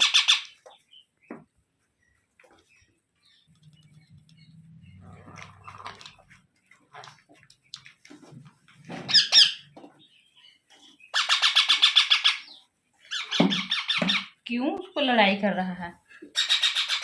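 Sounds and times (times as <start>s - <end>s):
parrots squawking: 0.0s - 0.6s, 9.1s - 9.8s, 11.1s - 14.4s, 16.3s - 17.0s.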